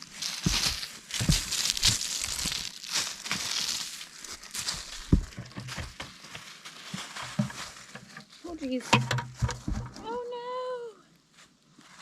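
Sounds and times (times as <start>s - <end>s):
dry material crinkling: 0.0s - 8.8s
dull thumps: 5.0s - 6.1s, 9.0s - 10.1s.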